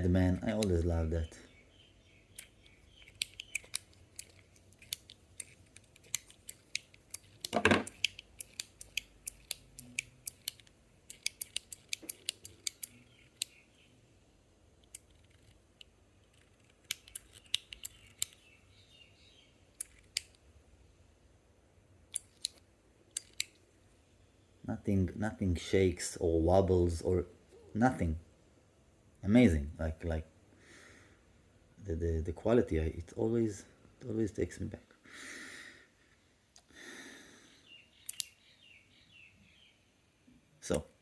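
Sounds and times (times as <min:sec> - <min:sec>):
metal fidget slider clicking: 0:02.4 - 0:13.6.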